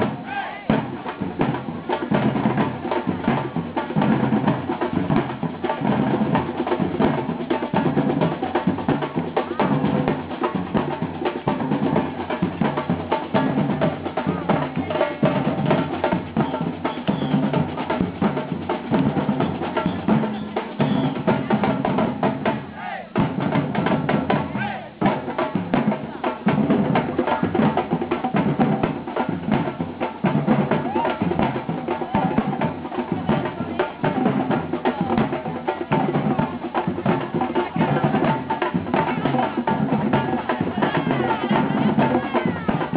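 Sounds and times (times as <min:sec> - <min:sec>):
drums playing busy rhythm: 0:00.0 - 0:42.9.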